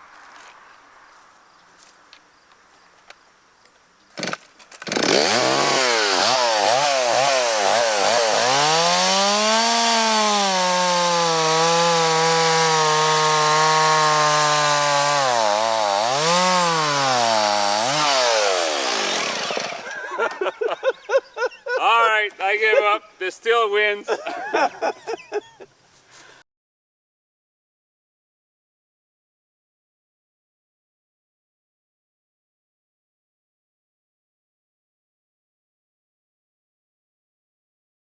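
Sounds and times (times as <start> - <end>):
chainsaw revving and cutting: 4.2 - 20.4.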